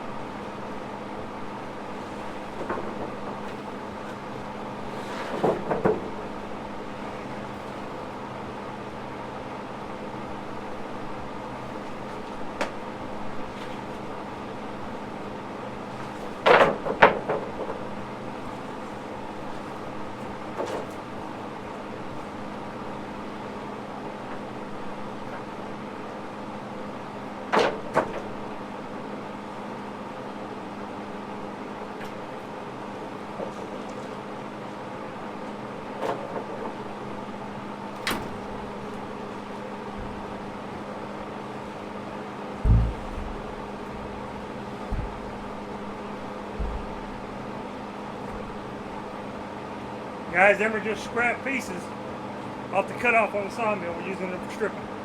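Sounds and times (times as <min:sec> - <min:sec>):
engine hum: 0:42.6 - 0:50.4
wooden boards knocking together: 0:42.7 - 0:47.6.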